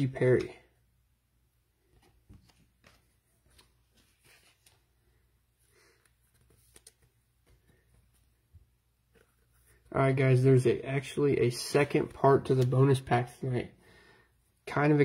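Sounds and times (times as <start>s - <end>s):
trading cards and wrappers rustling: 1.8s - 8.4s.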